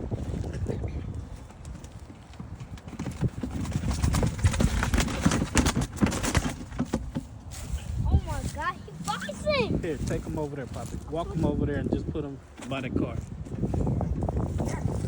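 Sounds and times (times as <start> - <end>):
pigeon wings flapping: 2.9 - 7.0.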